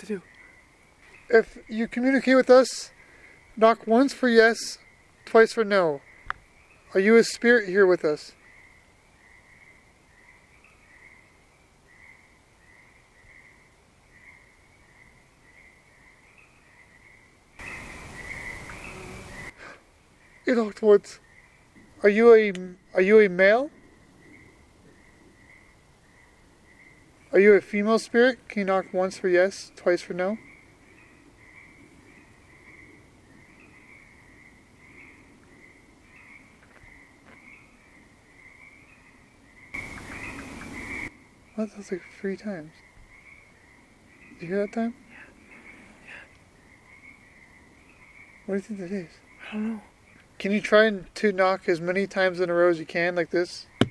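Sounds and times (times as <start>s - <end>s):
crickets chirping: 8.3s - 19.6s, 30.3s - 44.5s.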